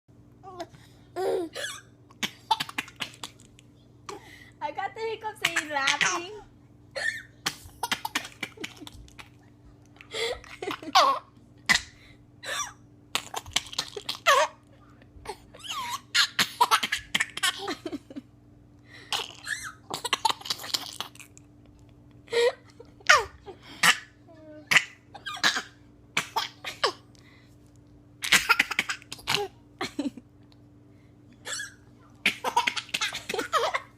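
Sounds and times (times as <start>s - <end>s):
child laughing: 22.4s - 23.6s.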